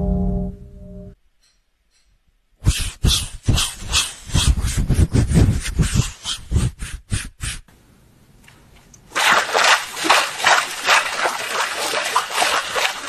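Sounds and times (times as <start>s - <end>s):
rhythmic water splashing: 9.1s - 13.0s.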